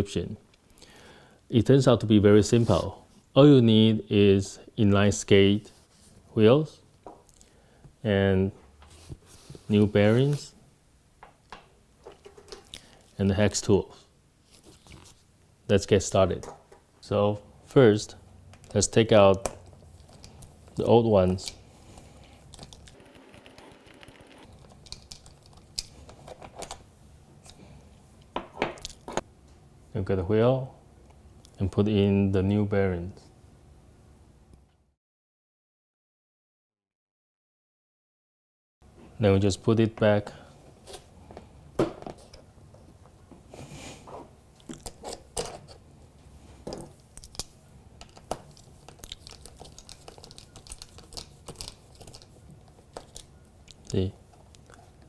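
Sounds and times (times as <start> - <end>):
small clicks taps and scrapes: 46.7 - 54.8.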